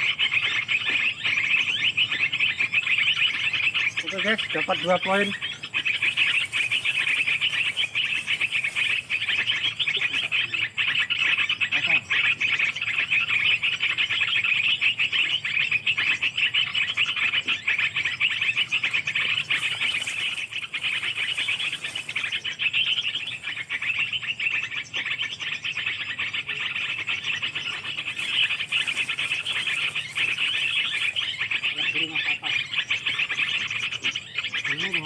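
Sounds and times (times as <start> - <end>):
chorus of calling animals: 0.0 - 35.0.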